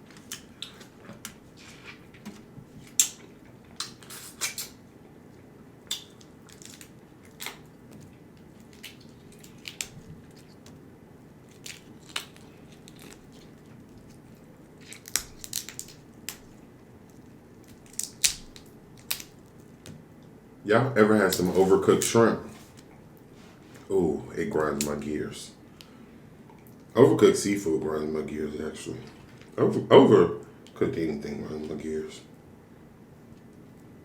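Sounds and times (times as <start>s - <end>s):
chewing smacks and crunches: 5.8s - 10.8s, 11.4s - 20.0s.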